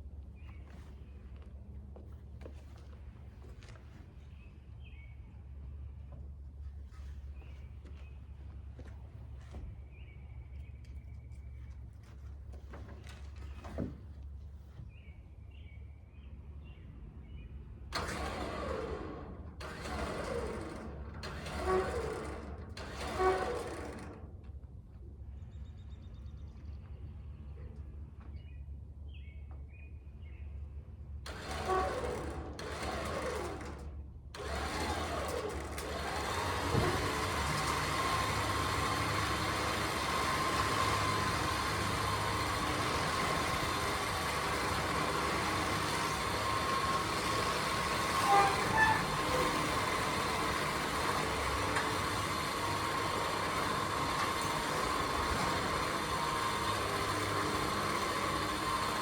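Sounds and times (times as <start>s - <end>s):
engine cranked by starter: 17.9s - 24.4s, 31.3s - 59.0s.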